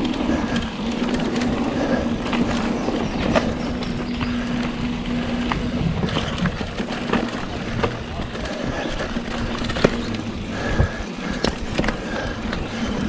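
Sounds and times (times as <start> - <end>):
bike tyres rolling on trail: 0.0 - 13.0
steady hum: 0.8 - 5.6.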